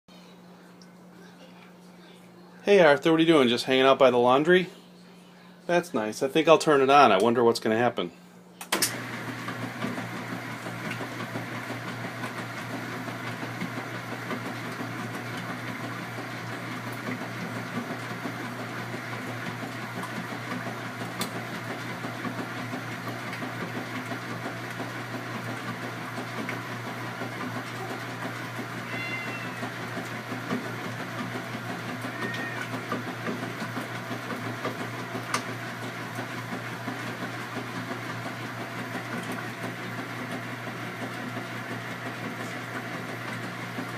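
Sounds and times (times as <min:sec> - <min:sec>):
washing machine humming: 0:00.1 - 0:43.9
cat meowing: 0:28.8 - 0:29.7, 0:32.0 - 0:32.8.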